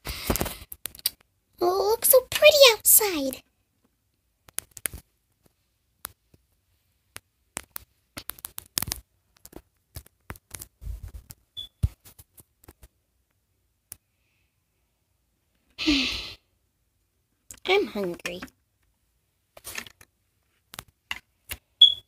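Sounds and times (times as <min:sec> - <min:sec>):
objects clicking and tapping: 0:07.1 - 0:12.9, 0:20.7 - 0:21.7.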